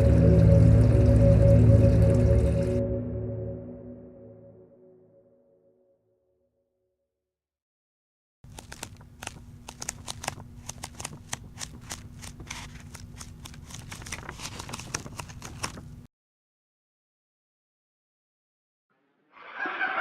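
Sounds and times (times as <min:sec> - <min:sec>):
rapid sharp clicks: 0:08.5 - 0:15.8.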